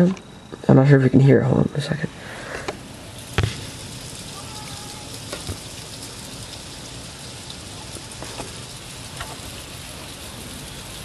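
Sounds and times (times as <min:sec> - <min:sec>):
sleet hissing: 0:02.1 - 0:11.0
ice pellets ticking: 0:02.4 - 0:11.0.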